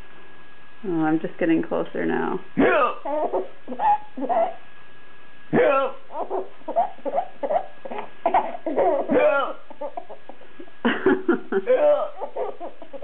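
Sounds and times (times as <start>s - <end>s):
man making hiccup noises: 2.6s - 3.1s, 5.5s - 6.0s, 9.1s - 9.6s, 11.7s - 12.2s
baby laughing: 3.0s - 4.6s, 5.6s - 13.0s.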